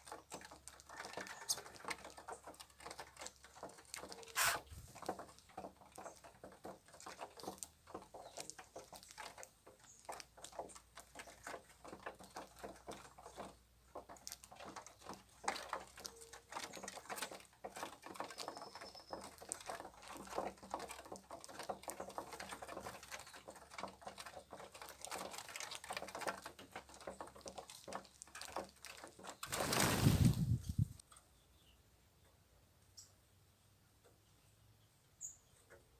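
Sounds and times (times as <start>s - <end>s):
birds pecking and hopping: 0.0s - 35.9s
faint bird chirp: 18.2s - 19.6s, 34.1s - 35.9s.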